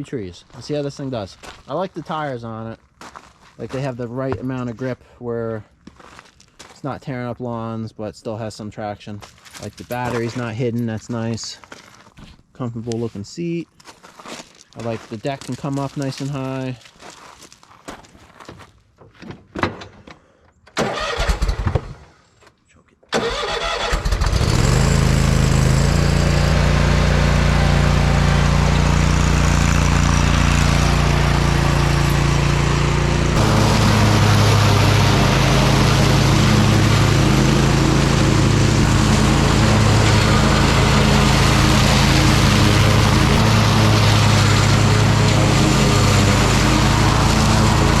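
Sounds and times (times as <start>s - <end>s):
mower engine running: 23.2s - 48.0s.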